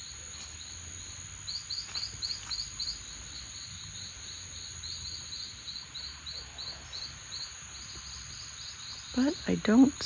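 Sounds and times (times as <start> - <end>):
insect chirps: 0.0 - 10.0
insect high-pitched buzz: 0.0 - 10.0.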